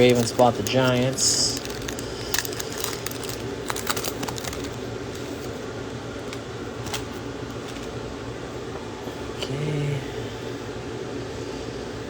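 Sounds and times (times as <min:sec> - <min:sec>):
trading cards rustling and clicking: 0:00.0 - 0:05.6, 0:06.2 - 0:08.0
room hum: 0:00.0 - 0:12.0.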